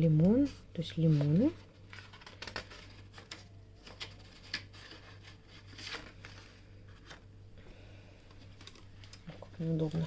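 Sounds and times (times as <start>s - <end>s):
steady low hum: 0.0s - 10.0s
paper pages rustling: 0.4s - 7.3s, 8.3s - 9.4s.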